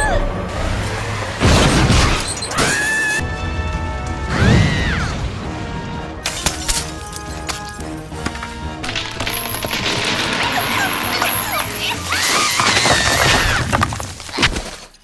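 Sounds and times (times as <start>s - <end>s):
cartoon background music: 1.9s - 13.6s.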